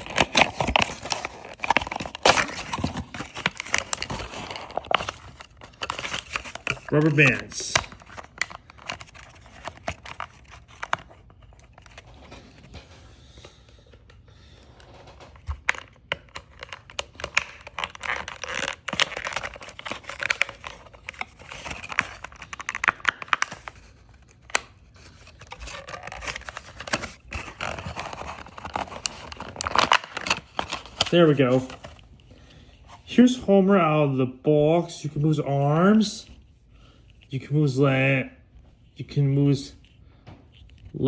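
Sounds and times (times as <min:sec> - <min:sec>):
packaging crinkling and tearing: 0:00.0 - 0:14.1, 0:14.9 - 0:33.2.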